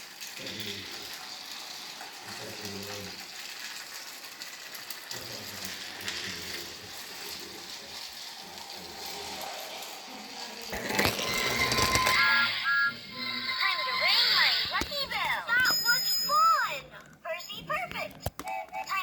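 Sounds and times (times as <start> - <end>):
steady hiss: 5.1 - 10.7.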